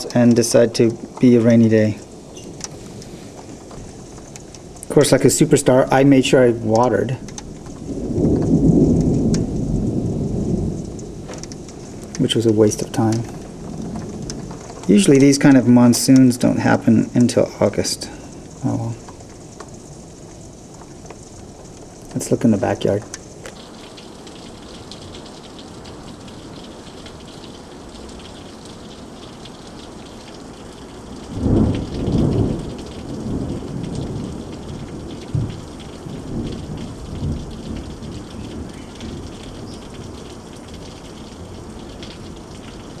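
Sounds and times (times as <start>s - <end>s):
thunder rumbling: 0.0s - 27.0s, 30.4s - 43.0s
steady rain falling: 0.0s - 43.0s
sharp thunder clap: 7.5s - 15.6s, 31.3s - 40.1s.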